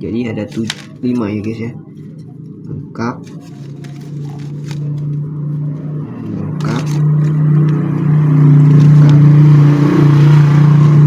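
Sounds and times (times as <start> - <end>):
engine humming: 0.6 - 11.0.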